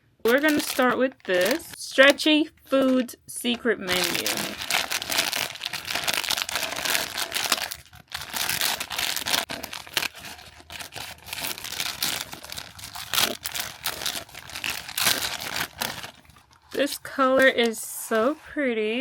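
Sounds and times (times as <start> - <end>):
packaging tearing and crinkling: 0.3 - 3.1, 3.8 - 17.6.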